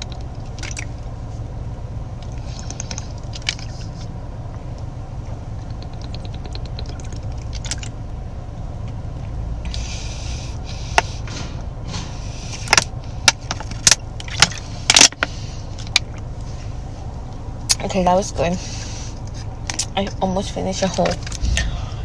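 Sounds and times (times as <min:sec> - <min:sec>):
sharp clicks and crackles: 0:00.0 - 0:00.9, 0:02.2 - 0:04.1, 0:05.6 - 0:08.0
steady low rumble: 0:00.0 - 0:22.0.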